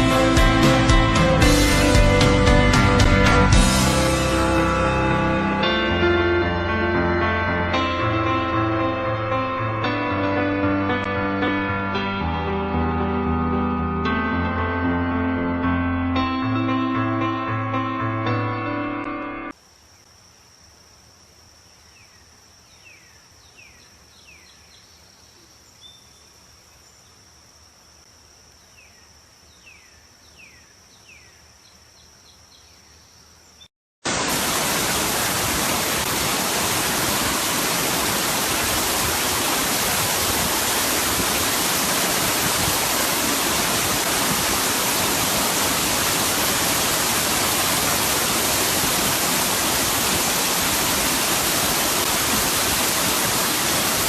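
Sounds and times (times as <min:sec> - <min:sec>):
waterfall rushing: 0:00.0 - 0:06.0, 0:34.1 - 0:54.0.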